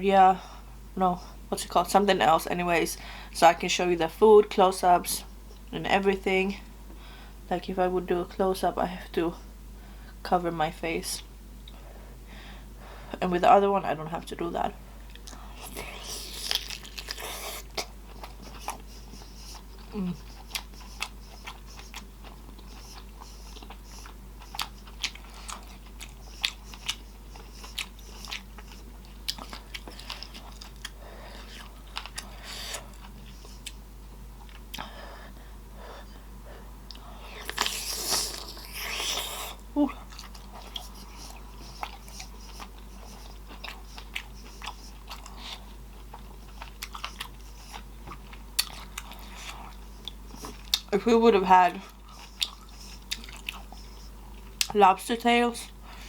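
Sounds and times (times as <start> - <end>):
faint low hum: 0.0 - 56.0
chewing with wet lip smacks: 15.1 - 33.8, 36.9 - 50.9, 51.8 - 54.8.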